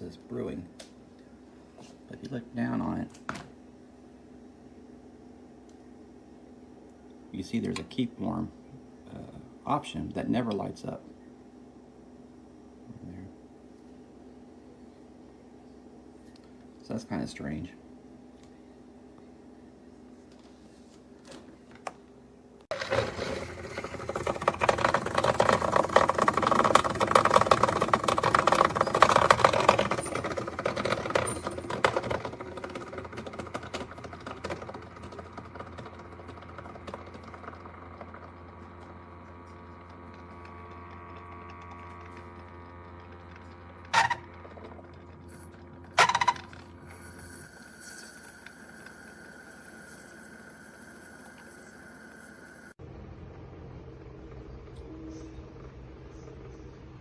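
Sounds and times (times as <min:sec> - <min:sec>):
coffee maker water gurgling: 0:22.7 - 0:52.8
low pump hum: 0:24.8 - 0:57.0.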